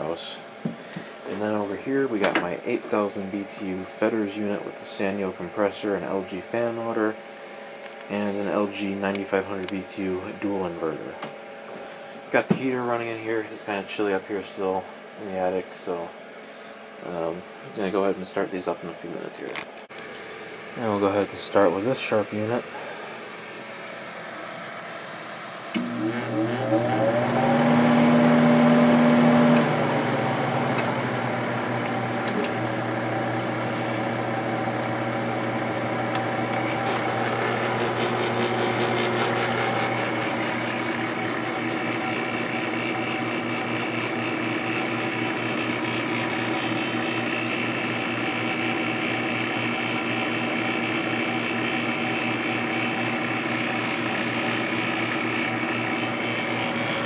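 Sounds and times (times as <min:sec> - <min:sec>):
fan air rushing: 0:00.0 - 0:25.9, 0:26.9 - 0:47.8, 0:54.6 - 0:57.0
loud hum: 0:25.3 - 0:47.8
motor spinning up whine: 0:25.7 - 0:57.0.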